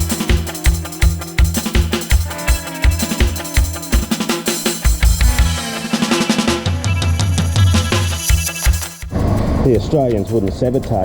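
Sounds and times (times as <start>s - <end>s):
music with drum beat: 0.0s - 11.0s.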